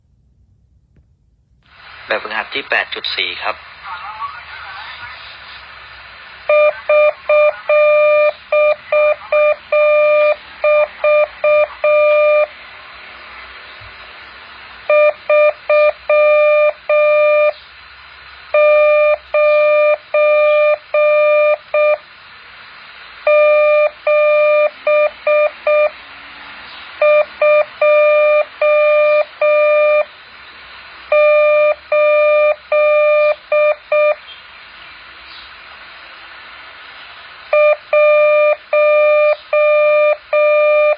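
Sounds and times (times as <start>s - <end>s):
steady hiss: 1.6s - 15.7s, 17.2s - 24.7s, 29.3s - 40.4s
morse code tone: 6.5s - 12.5s, 14.9s - 17.6s, 18.5s - 22.0s, 23.3s - 26.0s, 27.0s - 30.1s, 31.1s - 34.2s, 37.5s - 40.9s.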